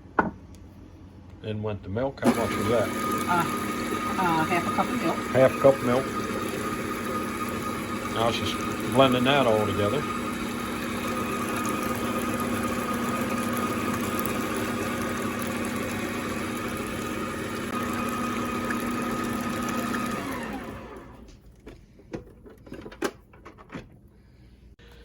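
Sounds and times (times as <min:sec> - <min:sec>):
electric mixer running: 0:02.2 - 0:21.3.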